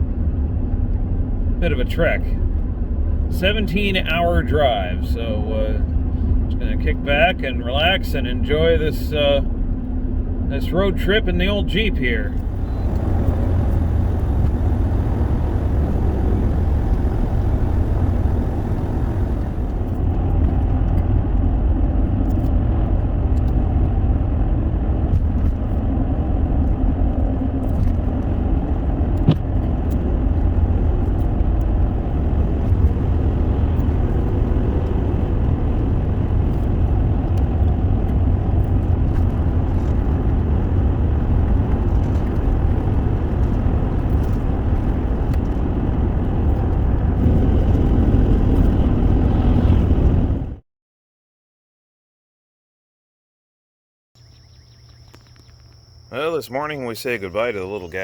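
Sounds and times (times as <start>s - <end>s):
car engine rumble: 0.0s - 50.6s
tyre noise: 27.1s - 37.8s.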